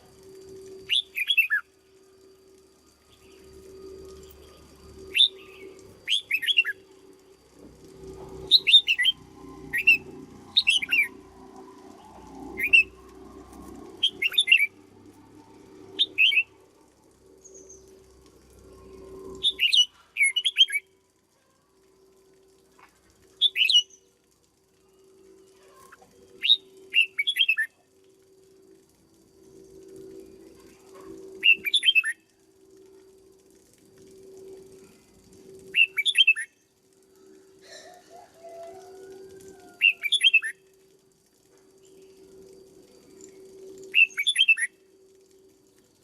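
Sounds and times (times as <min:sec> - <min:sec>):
faint steady hum: 0:00.0 - 0:46.0
bird singing warbled whistles: 0:00.7 - 0:01.7, 0:03.1 - 0:06.9, 0:08.4 - 0:13.0, 0:14.0 - 0:14.8, 0:15.9 - 0:16.6, 0:19.3 - 0:21.0, 0:23.4 - 0:24.0, 0:25.6 - 0:27.8, 0:30.9 - 0:32.3, 0:35.6 - 0:36.6, 0:39.8 - 0:40.7, 0:43.0 - 0:45.0.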